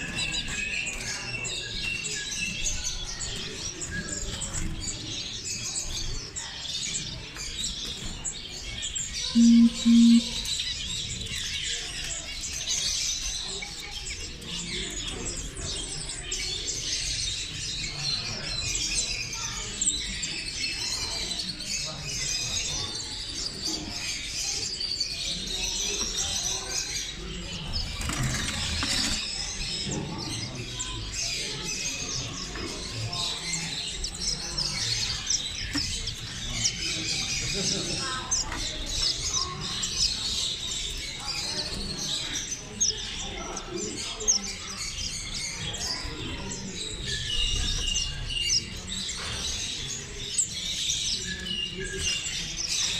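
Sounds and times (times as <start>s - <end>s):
cage birds chirping and singing: 0.0s - 52.9s
short low beeps: 9.4s - 10.3s.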